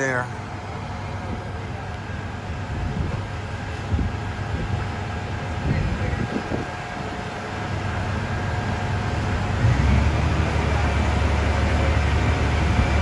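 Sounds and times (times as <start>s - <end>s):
low vehicle rumble: 1.2s - 13.0s
wind buffeting microphone: 2.6s - 13.0s.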